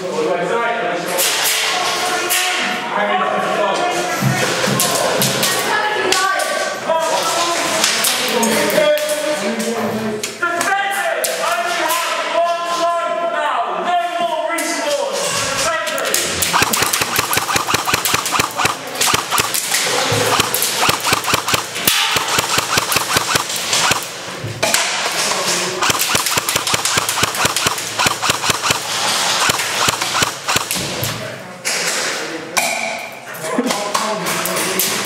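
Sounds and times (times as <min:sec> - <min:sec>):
airsoft guns firing bursts: 0:16.4 - 0:24.3, 0:25.8 - 0:31.0.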